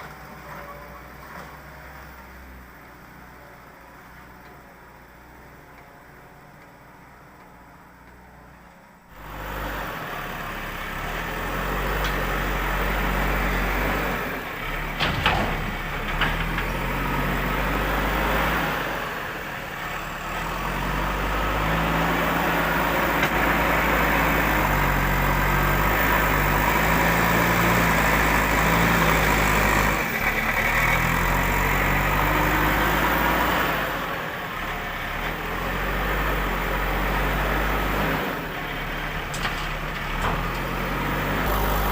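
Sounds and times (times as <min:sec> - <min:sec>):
heavy diesel engine running: 0:09.1 - 0:41.9.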